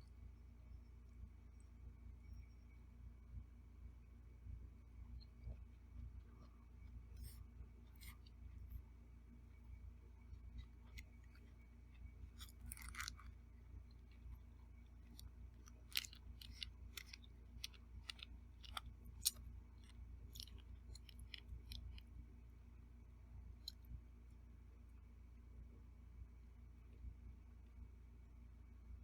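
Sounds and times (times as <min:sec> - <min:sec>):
low steady hum: 0:00.0 - 0:29.0
person chewing: 0:10.6 - 0:13.4, 0:15.0 - 0:22.0.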